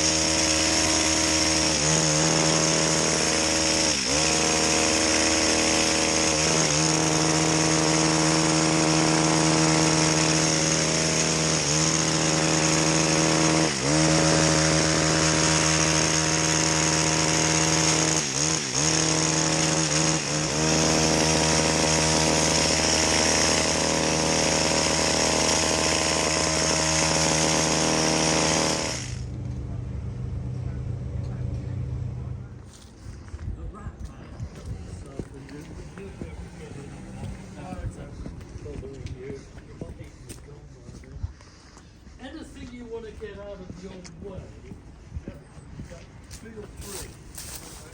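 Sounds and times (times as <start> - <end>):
chainsaw running at high revs: 0.0 - 29.8, 34.5 - 40.5, 46.2 - 47.9.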